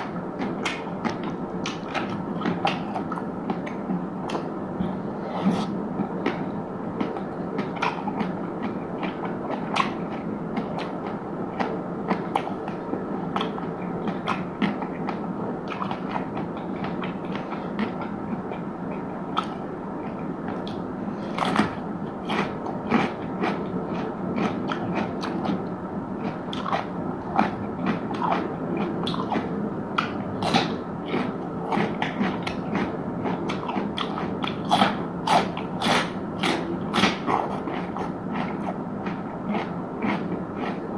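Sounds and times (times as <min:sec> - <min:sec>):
steady background noise: 0:00.0 - 0:40.9
chewing crisp food: 0:07.0 - 0:40.9.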